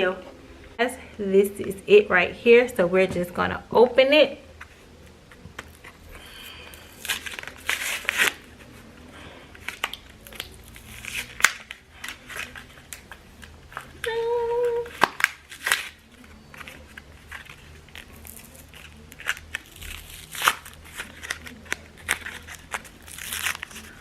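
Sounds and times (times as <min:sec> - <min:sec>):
packaging crinkling and tearing: 0:05.6 - 0:09.0, 0:09.6 - 0:24.0.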